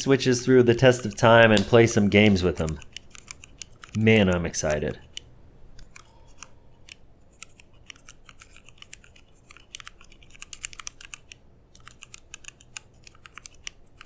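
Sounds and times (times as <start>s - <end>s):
mechanical keyboard typing: 1.0s - 4.0s, 5.8s - 14.0s.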